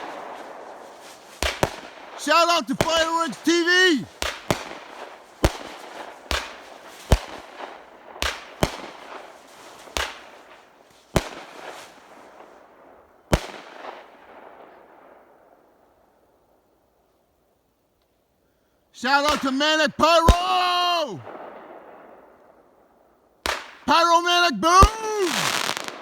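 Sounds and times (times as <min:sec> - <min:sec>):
fireworks banging: 0:00.0 - 0:12.7, 0:19.0 - 0:22.2, 0:23.5 - 0:26.0.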